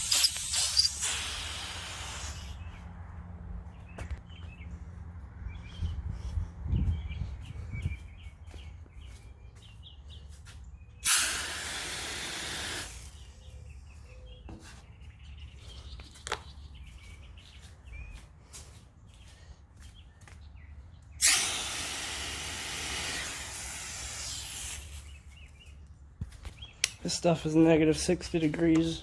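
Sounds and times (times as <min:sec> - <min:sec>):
freeze spray hissing: 0:00.0 - 0:02.6, 0:11.0 - 0:13.1, 0:21.2 - 0:25.0
birds chirping: 0:01.9 - 0:21.7, 0:23.0 - 0:29.0.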